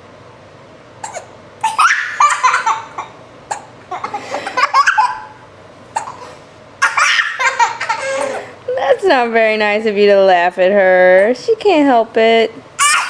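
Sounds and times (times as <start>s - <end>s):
baby hiccups: 1.0s - 1.3s, 6.0s - 6.3s
young child giggling: 1.6s - 5.4s, 6.0s - 8.6s.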